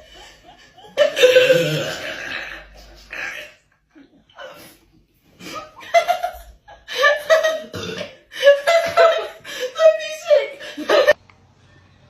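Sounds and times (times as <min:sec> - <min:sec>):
people laughing: 0:00.0 - 0:04.4, 0:05.4 - 0:07.7.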